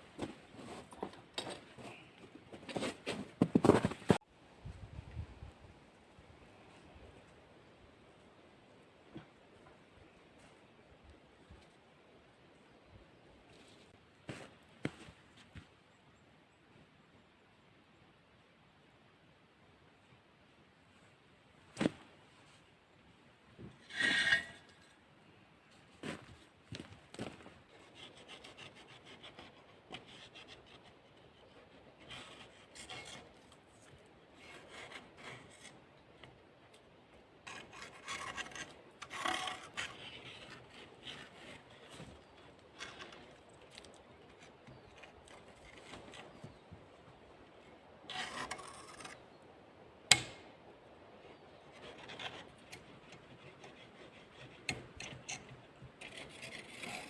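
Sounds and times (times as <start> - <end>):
brush scraping chimney pipe: 23.8 - 25.0, 37.4 - 46.6, 48.1 - 49.3, 51.6 - 57.0.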